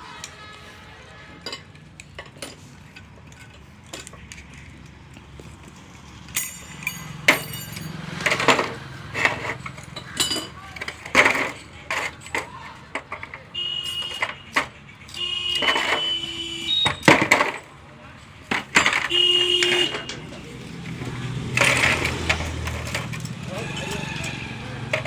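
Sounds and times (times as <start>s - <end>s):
metal parts clinking: 1.4s - 4.9s, 6.3s - 17.7s, 21.5s - 25.0s.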